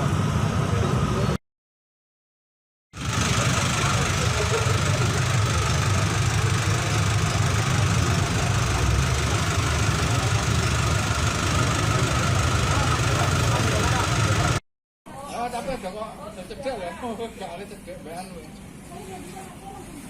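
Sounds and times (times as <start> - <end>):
vehicle engine running: 3.0 - 14.6.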